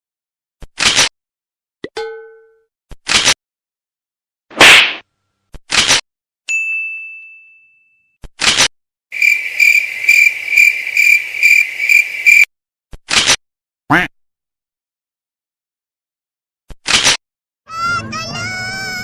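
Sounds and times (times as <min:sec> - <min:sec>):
bright ding: 0:06.5 - 0:08.1
cricket chirp effect: 0:09.1 - 0:12.5.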